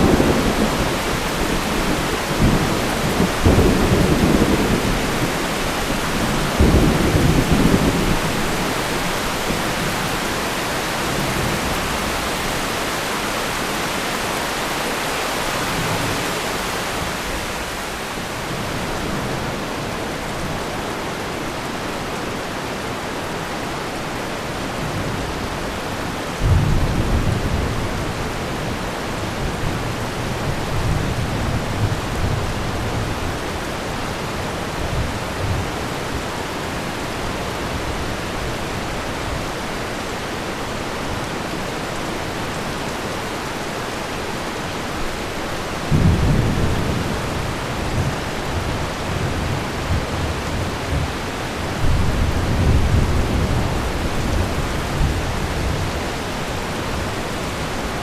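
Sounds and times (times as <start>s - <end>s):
thunder rumbling: 0.0s - 12.7s
heavy rain hissing: 0.0s - 58.0s.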